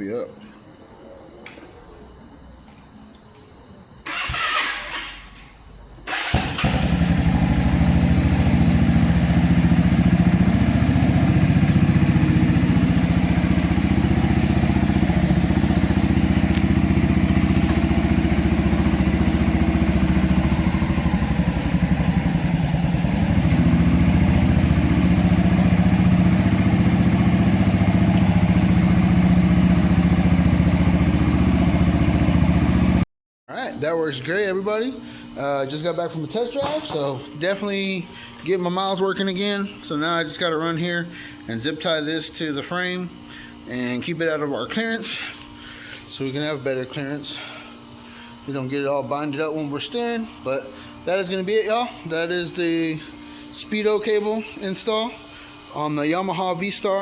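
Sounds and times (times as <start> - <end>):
motorcycle engine running: 6.1 - 33.0.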